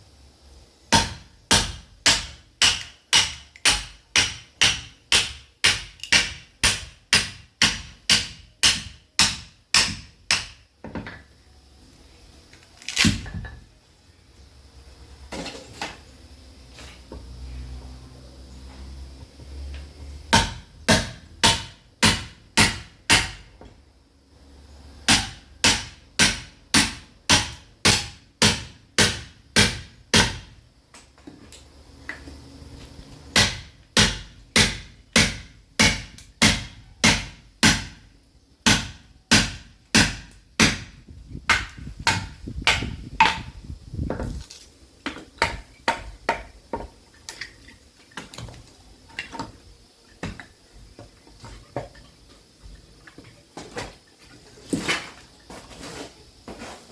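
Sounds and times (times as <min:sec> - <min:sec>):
sledgehammer striking steel chisel: 0:00.9 - 0:10.6, 0:20.4 - 0:23.5.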